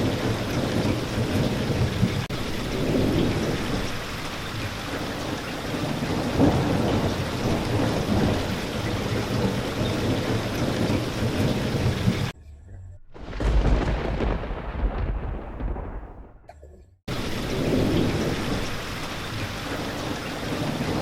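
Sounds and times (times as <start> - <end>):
low thunder rumble: 0.0 - 12.3, 13.2 - 21.0
steady rain: 0.0 - 12.4, 13.2 - 16.4, 17.1 - 21.0.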